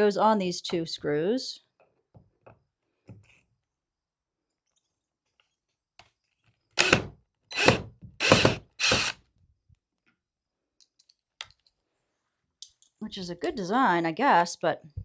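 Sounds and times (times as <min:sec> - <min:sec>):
power drill running: 0:06.8 - 0:09.2.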